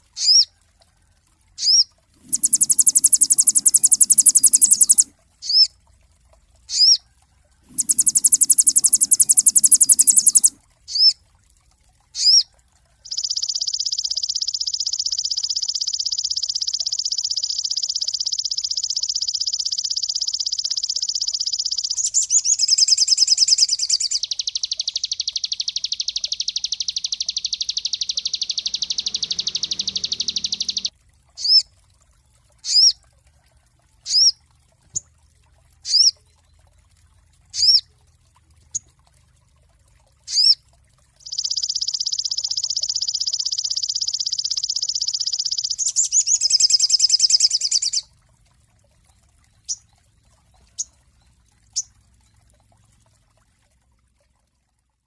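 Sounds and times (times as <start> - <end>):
songbird chirping and trilling: 0.2 - 0.5, 1.6 - 5.7, 6.7 - 7.0, 7.7 - 11.2, 12.2 - 31.6, 41.2 - 48.1.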